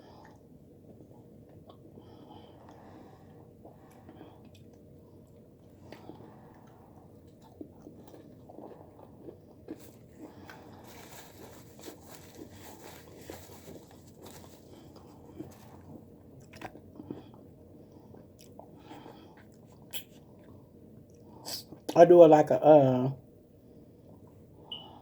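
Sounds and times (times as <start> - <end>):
crunching bites and chewing: 3.6 - 17.5.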